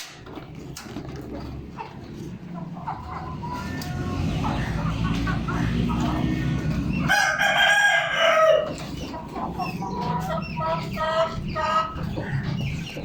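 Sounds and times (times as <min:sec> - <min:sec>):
bird calling: 0:02.8 - 0:13.0.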